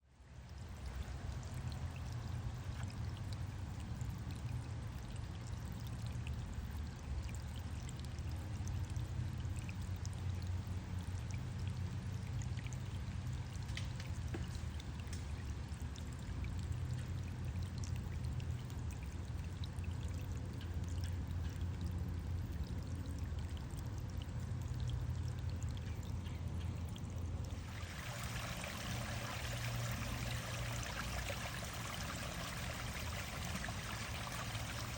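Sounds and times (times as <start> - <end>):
stream over small waterfall: 0.2 - 34.9.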